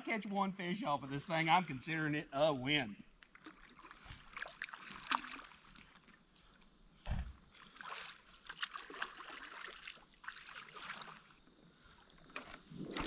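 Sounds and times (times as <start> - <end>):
water lapping and splashing: 3.3 - 6.3, 7.1 - 13.0
soft low thump: 7.0 - 7.4.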